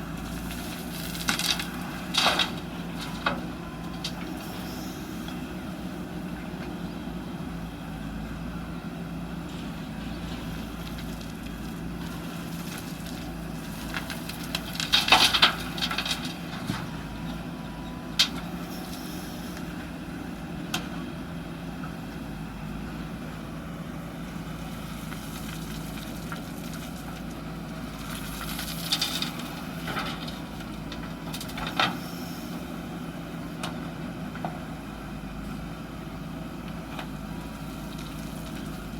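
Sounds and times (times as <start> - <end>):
diesel engine running: 0.0 - 38.9
gravel and steel bucket crashing: 10.2 - 16.9, 27.9 - 30.6.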